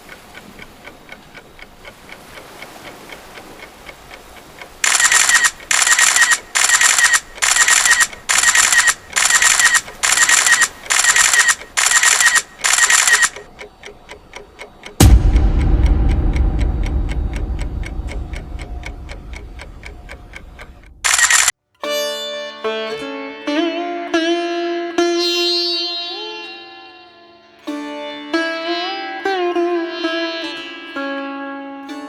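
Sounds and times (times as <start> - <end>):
clock ticking: 0.0 - 21.5
alarm bursts: 4.8 - 13.5, 15.0 - 21.5
loud full sound: 15.0 - 21.5.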